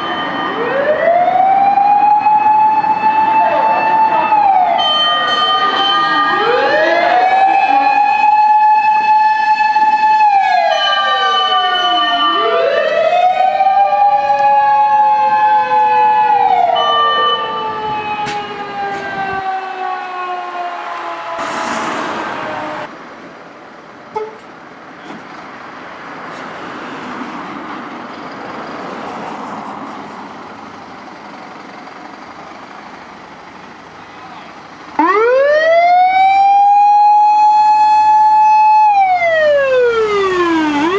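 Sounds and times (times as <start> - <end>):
motor siren wailing: 0.0 - 22.9, 35.0 - 40.9
steady higher siren tone: 0.0 - 22.9, 35.0 - 40.9
road and engine noise: 0.0 - 40.9
loud rush of noise: 20.7 - 23.2.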